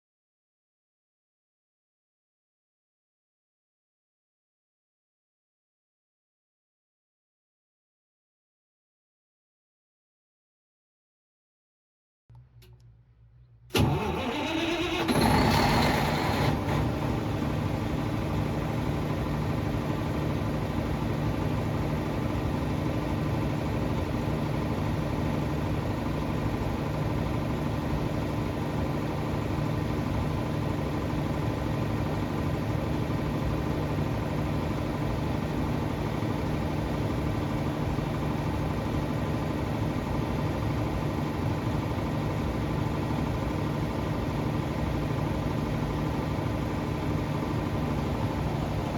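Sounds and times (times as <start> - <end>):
diesel generator running: 12.3 - 48.9.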